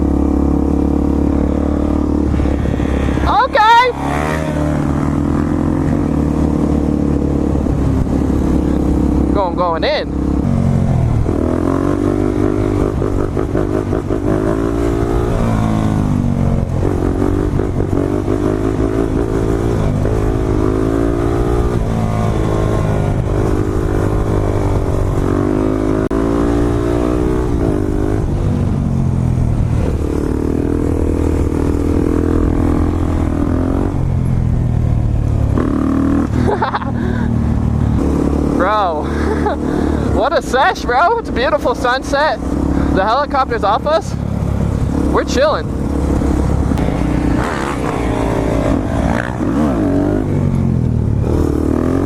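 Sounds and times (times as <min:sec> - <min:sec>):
dirt bike engine revving: 0:00.0 - 0:28.5, 0:29.6 - 0:34.1, 0:35.4 - 0:52.0.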